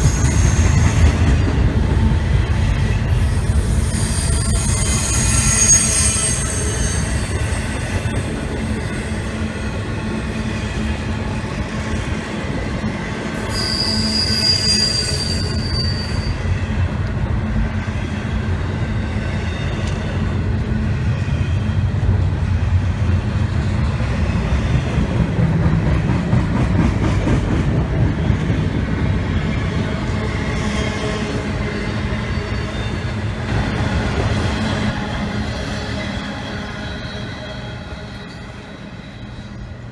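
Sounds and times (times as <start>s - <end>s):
high wheel squeal: 0.0s - 1.5s, 3.1s - 9.5s, 13.4s - 16.6s
freight train rumbling past: 0.0s - 39.9s.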